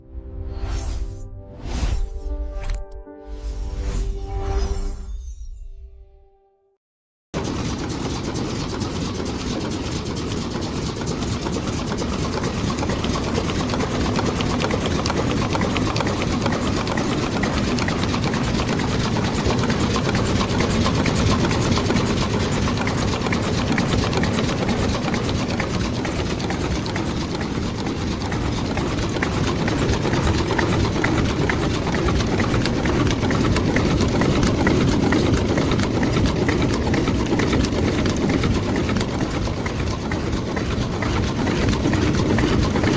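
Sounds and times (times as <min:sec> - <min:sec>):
packaging machine clatter and hum: 0:07.4 - 0:42.9.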